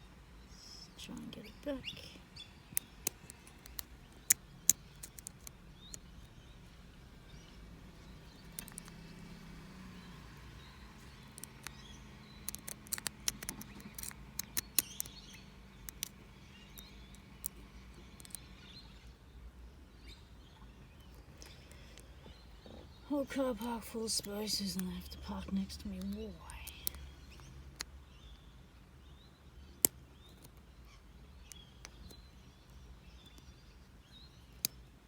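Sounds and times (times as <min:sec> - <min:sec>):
lock pick clicking in padlock: 0:12.5 - 0:16.1.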